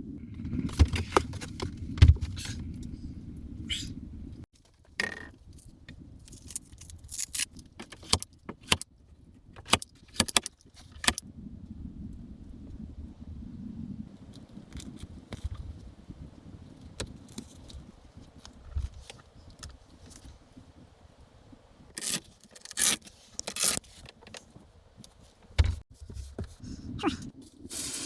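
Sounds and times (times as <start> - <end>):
low steady rumble: 0.0 - 4.5, 10.9 - 21.9.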